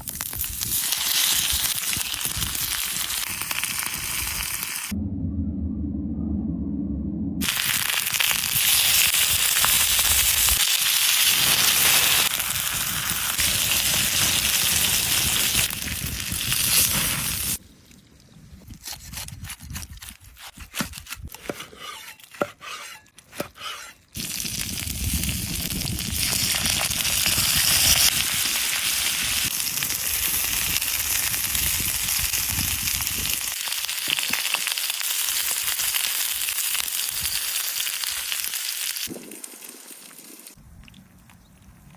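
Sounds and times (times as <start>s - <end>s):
food sizzling in a pan: 0.0s - 4.9s, 7.4s - 17.6s, 24.2s - 40.6s
pops and crackles: 24.2s - 41.9s.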